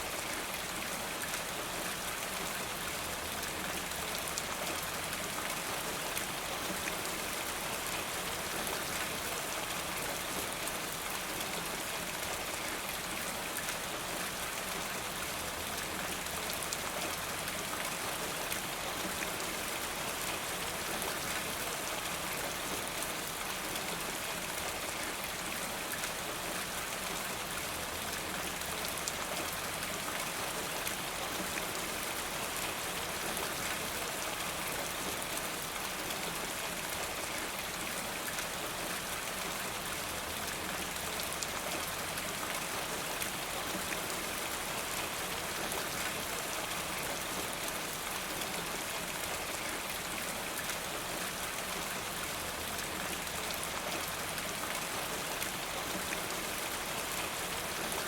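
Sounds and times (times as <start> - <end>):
steady rain falling: 0.0 - 58.0.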